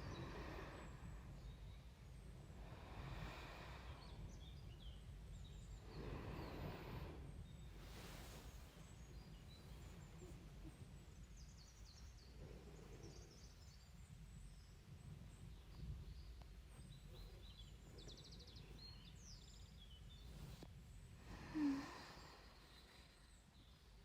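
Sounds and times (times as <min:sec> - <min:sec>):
soft breaths: 0:00.0 - 0:24.0
faint high bird chirps: 0:03.1 - 0:20.7.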